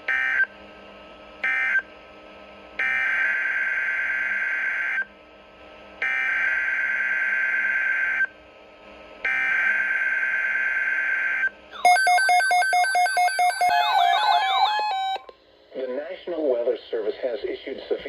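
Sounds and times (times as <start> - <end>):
warbling electronic alert tone: 11.8 - 15.3.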